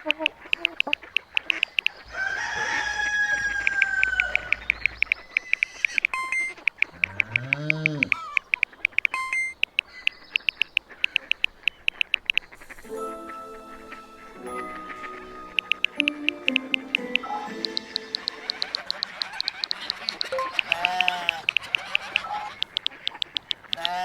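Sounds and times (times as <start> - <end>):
fast even clicking: 0.0 - 2.1, 3.4 - 12.7, 15.5 - 24.0
farm bird calls: 0.0 - 24.0
steady musical notes: 12.6 - 21.4.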